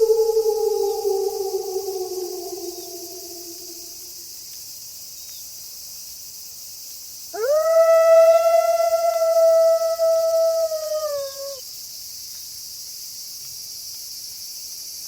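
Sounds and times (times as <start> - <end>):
wolf howling: 0.0 - 4.2, 7.4 - 11.6
steady high hiss: 0.0 - 15.0.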